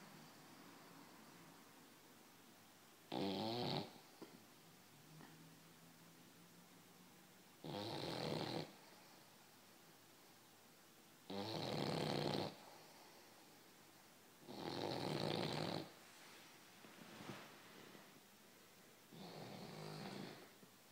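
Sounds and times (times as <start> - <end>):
dog snoring: 3.1 - 4.1, 7.6 - 8.8, 11.3 - 12.9, 14.4 - 16.0, 19.1 - 20.6.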